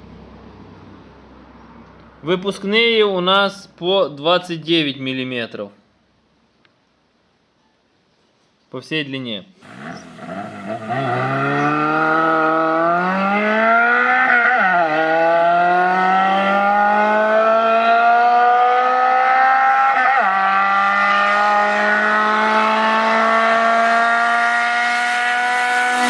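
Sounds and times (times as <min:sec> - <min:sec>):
car engine accelerating: 0:09.6 - 0:26.0.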